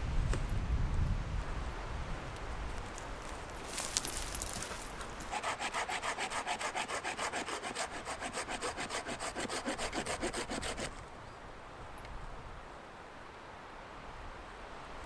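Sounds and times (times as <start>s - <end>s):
hand saw cutting wood: 5.3s - 11.0s.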